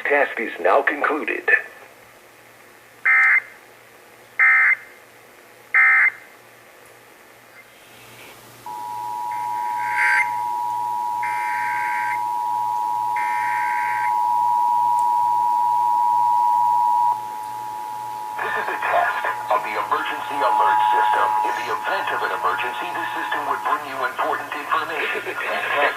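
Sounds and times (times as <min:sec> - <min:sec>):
two-tone attention signal: 0:08.7 - 0:24.2
digital data tone bursts: 0:08.7 - 0:24.6.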